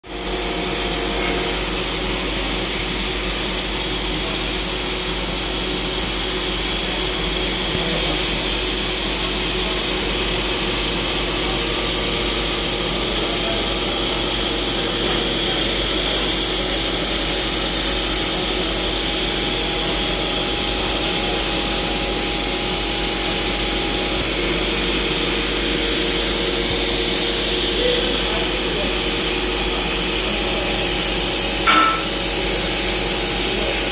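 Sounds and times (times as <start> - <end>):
cnc machine cutting: 0.0 - 33.9
high whine: 0.0 - 33.9.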